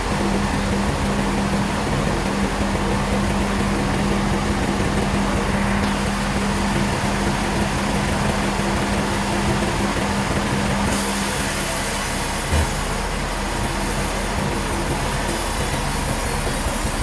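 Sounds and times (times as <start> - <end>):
sawmill machinery humming: 0.0 - 17.0
low thump: 12.5 - 13.2.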